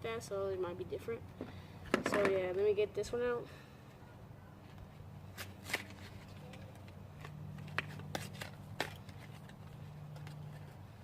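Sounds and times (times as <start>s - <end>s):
packaging rustling and clicks: 5.4s - 10.7s.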